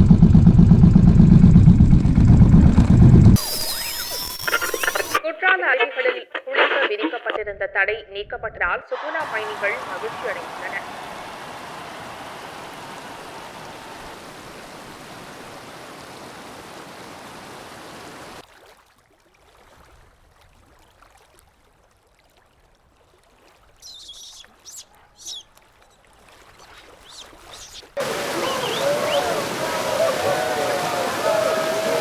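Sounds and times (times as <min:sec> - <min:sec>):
waterfall rushing: 0:09.2 - 0:18.4, 0:28.0 - 0:32.0
bird chirping: 0:23.8 - 0:25.5, 0:26.9 - 0:29.4.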